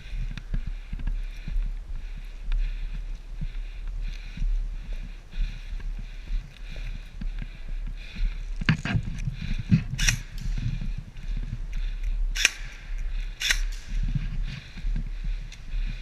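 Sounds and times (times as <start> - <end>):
steady low rumble: 0.0 - 16.0
airsoft gun shots: 12.4 - 12.8, 13.4 - 14.0.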